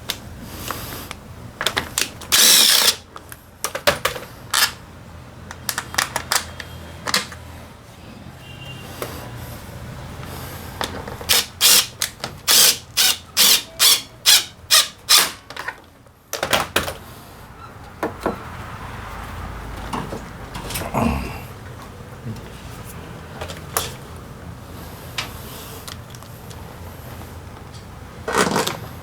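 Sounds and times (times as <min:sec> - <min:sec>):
tools and metal parts clattering: 0:28.2 - 0:28.8.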